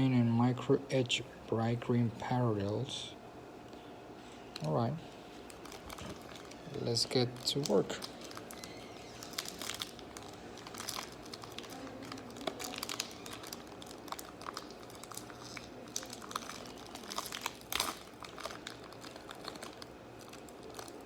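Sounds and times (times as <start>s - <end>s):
wrapper crinkling: 4.6s - 21.0s.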